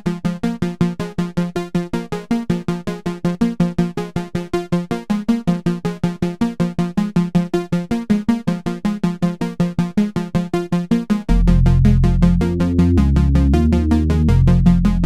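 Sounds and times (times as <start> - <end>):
synth arpeggio of plucked notes: 11.3 - 15.0.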